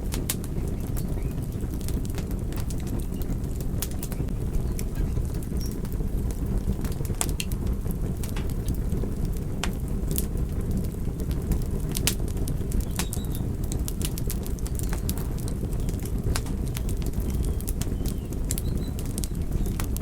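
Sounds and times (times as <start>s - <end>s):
low rumble: 0.0s - 12.7s
campfire crackling and popping: 0.0s - 20.0s.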